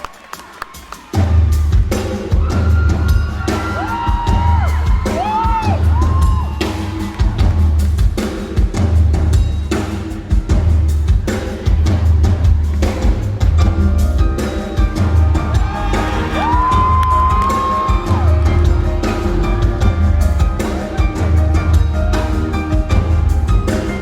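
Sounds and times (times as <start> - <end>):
drum kit groove: 0.0 - 24.0
deep pulsing bass: 13.4 - 24.0.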